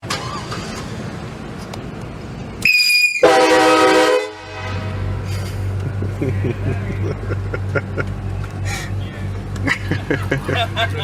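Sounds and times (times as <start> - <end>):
train horn chord: 3.2 - 5.1.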